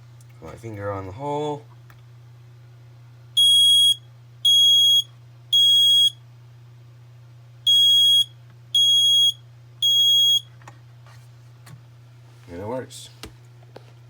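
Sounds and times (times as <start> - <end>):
smoke alarm beeping: 3.4 - 6.2, 7.7 - 10.5.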